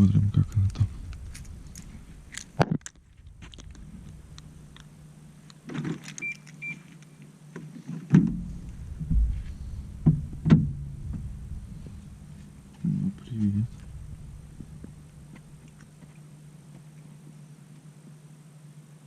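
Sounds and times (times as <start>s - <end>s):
short electronic beeps: 6.2s - 6.8s
car door opening thump: 8.1s - 12.7s.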